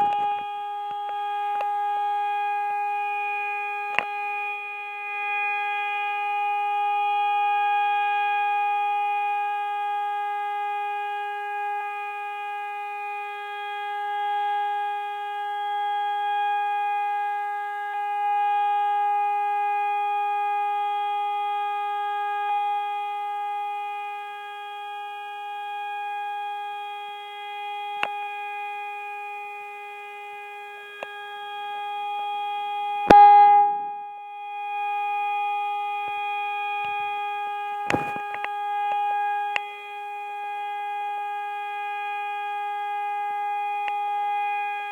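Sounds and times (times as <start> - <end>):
steady siren tone: 0.0 - 9.2
steady warning siren tone: 0.0 - 36.8
loud knock: 37.9 - 38.4.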